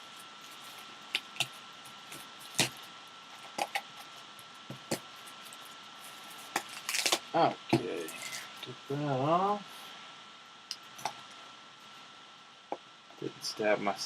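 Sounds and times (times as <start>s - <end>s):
packaging being cut open: 6.5s - 7.2s.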